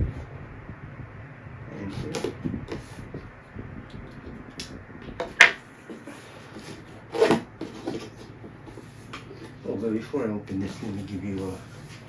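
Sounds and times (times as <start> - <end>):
cardboard box rubbing and tapping: 5.2 - 9.6.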